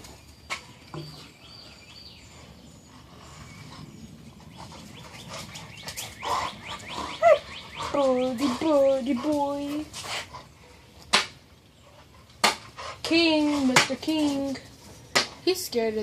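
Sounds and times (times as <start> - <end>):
small birds chirping: 0.0 - 12.4.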